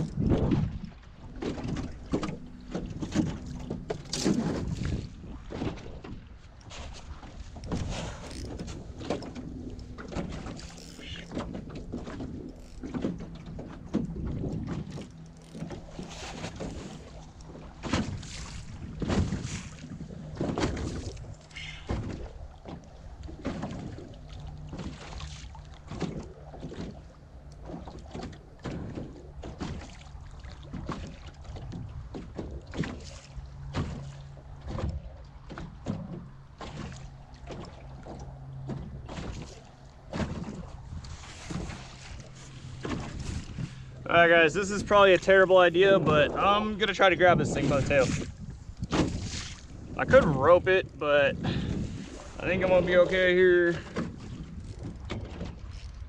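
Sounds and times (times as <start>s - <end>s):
water splashing: 0.0s - 56.0s
fish thrashing against boat hull: 1.3s - 33.1s, 47.4s - 50.3s.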